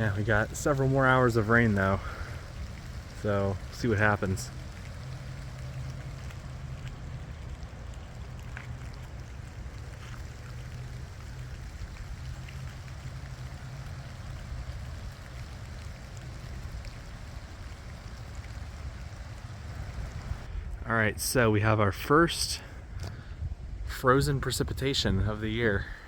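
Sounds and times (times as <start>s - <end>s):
drip ticks: 0.0s - 20.5s
low hum: 0.0s - 24.0s
steady rain falling: 0.0s - 26.0s
wind rumble on microphone: 0.0s - 26.0s.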